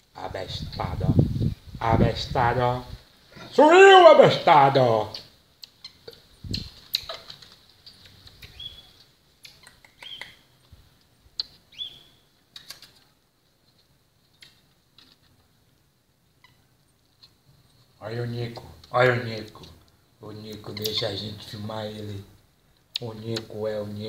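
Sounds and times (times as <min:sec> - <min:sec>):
marmosets chirping: 0:05.1 - 0:10.5, 0:11.4 - 0:12.9, 0:20.7 - 0:21.2.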